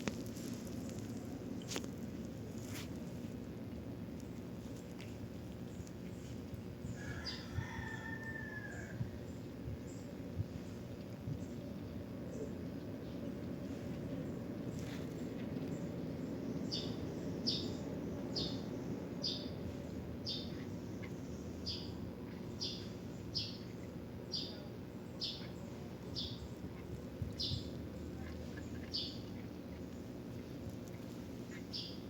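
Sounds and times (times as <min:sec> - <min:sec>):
engine running with low rumble: 0:00.0 - 0:32.0.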